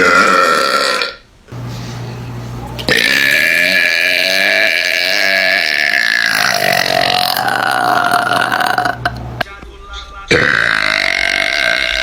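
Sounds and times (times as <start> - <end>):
woman burping: 0.0 - 1.2, 2.9 - 9.2, 10.3 - 12.0.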